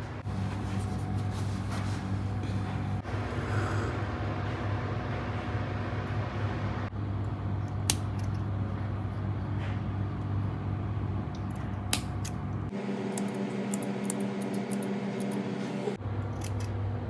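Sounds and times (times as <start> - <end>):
low hum: 0.0 - 17.0
higher hum: 2.1 - 6.9.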